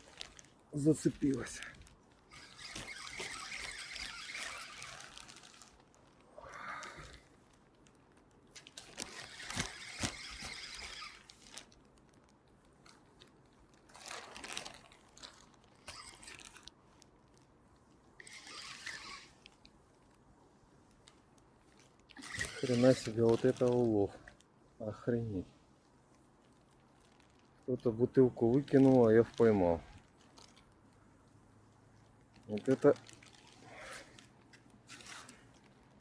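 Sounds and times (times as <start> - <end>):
rustling and crunching handling: 0.0 - 36.0.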